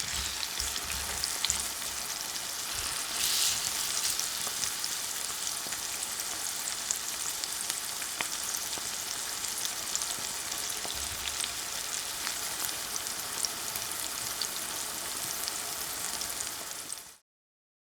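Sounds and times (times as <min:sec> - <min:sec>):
food sizzling in hot pan: 0:00.0 - 0:17.2.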